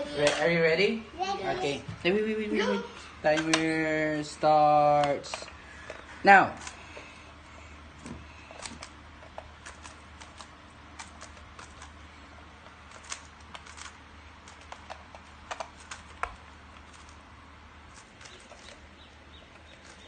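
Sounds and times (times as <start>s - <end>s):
steady low hum: 0.0s - 20.0s
plastic cube clicking: 8.6s - 12.0s, 12.9s - 17.2s.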